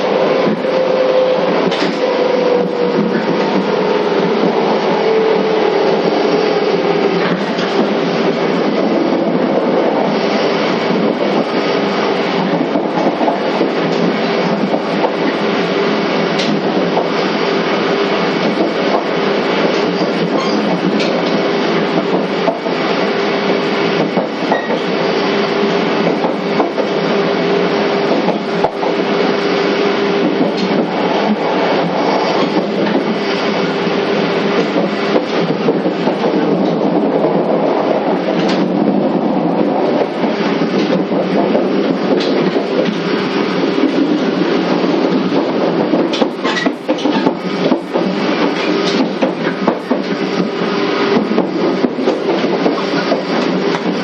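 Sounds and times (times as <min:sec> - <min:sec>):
train wheels rumbling on rail: 0:00.0 - 0:54.0
wheels clicking over rail joints: 0:39.7 - 0:54.0.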